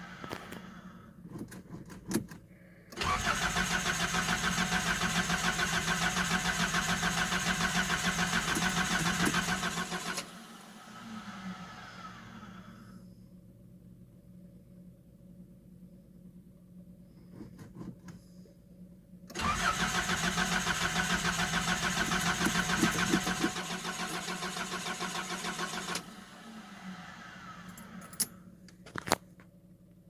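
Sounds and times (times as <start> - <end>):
starter cranking engine: 2.9 - 10.7, 19.3 - 28.0.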